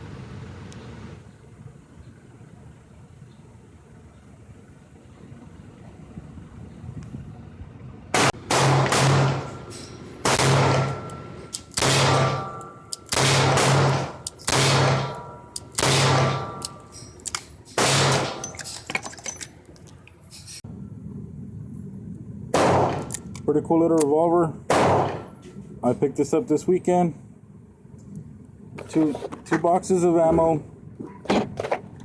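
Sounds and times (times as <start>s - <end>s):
echoing gunshots: 8.2s - 11.1s, 11.8s - 16.6s, 17.8s - 18.4s, 22.5s - 23.2s, 24.7s - 25.3s.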